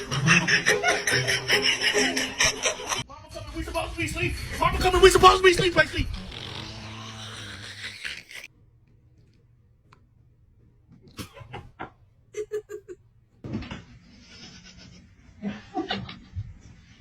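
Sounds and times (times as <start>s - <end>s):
animal pitched cries: 6.1s - 8.5s.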